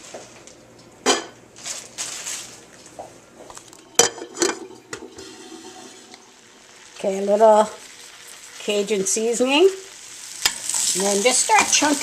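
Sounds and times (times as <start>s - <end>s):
cookware and utensils clinking: 3.8s - 6.2s.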